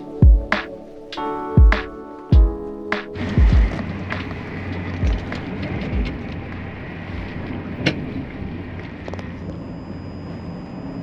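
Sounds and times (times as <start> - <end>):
faint high whine: 3.1 - 11.0
train rumbling: 3.2 - 9.0.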